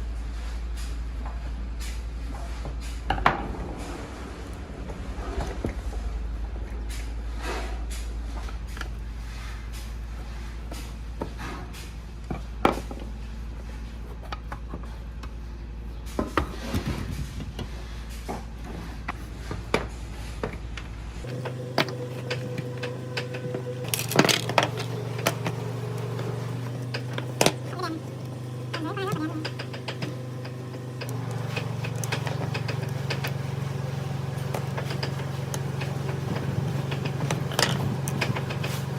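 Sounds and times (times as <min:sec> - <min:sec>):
low machine hum: 0:00.0 - 0:38.9.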